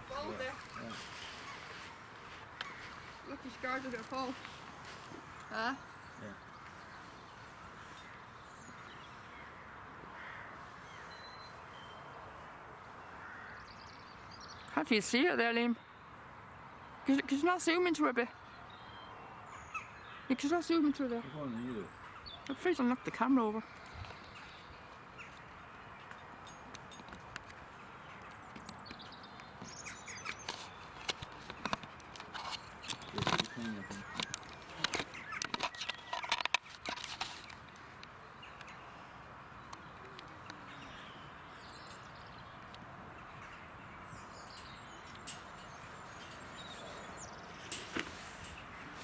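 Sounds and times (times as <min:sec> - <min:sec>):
outdoor background noise: 0:00.0 - 0:49.0
distant caw-like bird calls: 0:00.2 - 0:03.3, 0:06.2 - 0:11.5, 0:13.0 - 0:14.2, 0:19.5 - 0:20.3.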